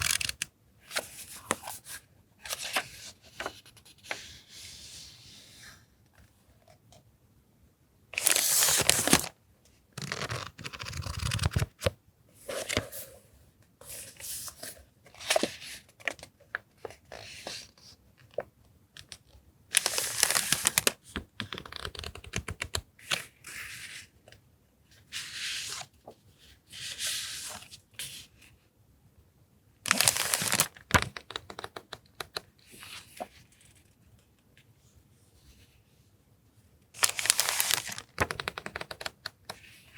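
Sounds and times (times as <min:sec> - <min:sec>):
paper rustling and crinkling: 0:08.2 - 0:09.3, 0:19.8 - 0:21.0, 0:29.9 - 0:33.8, 0:37.0 - 0:39.6.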